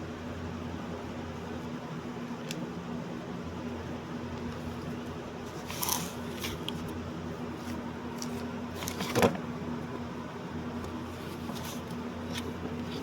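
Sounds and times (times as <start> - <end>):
low electrical hum: 0.0 - 13.0
handling noises: 4.4 - 9.5, 10.8 - 13.0.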